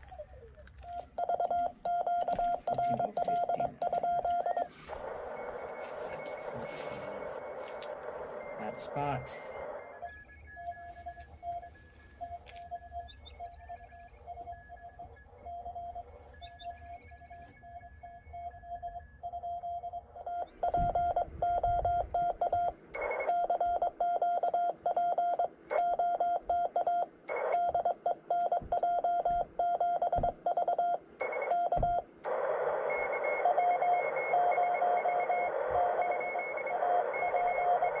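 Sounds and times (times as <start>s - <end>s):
morse code beep tone: 0.8s - 38.0s
radio hiss: 4.4s - 10.0s.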